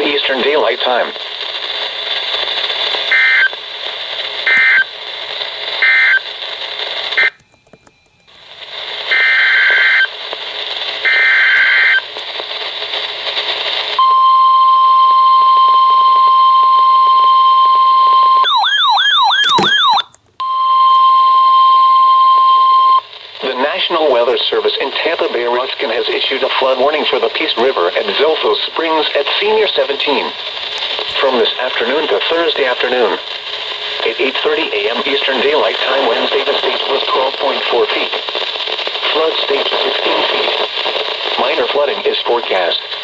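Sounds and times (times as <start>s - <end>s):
static hiss: 0.0s - 14.0s, 22.6s - 43.0s
steady warning alarm tone: 3.1s - 3.6s, 4.4s - 4.9s, 5.8s - 6.3s, 7.0s - 10.2s, 11.0s - 12.1s, 14.0s - 23.1s
data bursts: 5.7s - 6.4s, 7.0s - 10.2s, 18.4s - 20.9s.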